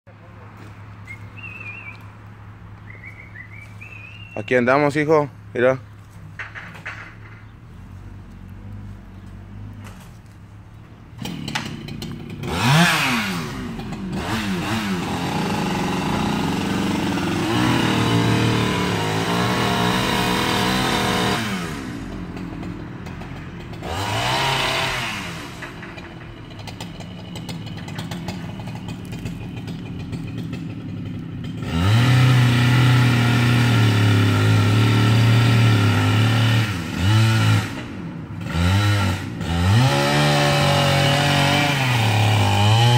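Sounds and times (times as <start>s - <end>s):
chainsaw engine revving: 11.2s - 42.9s.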